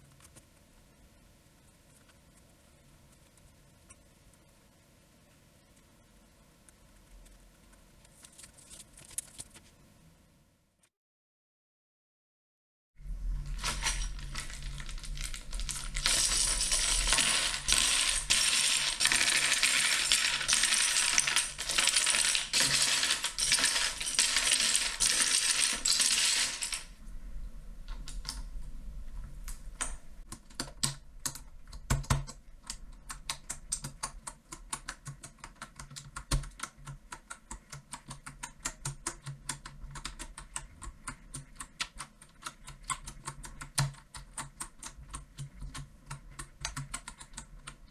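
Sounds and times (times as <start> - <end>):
dense clatter of small hard objects: 13.1 - 27.0
mechanical keyboard typing: 13.7 - 26.7, 29.8 - 47.9.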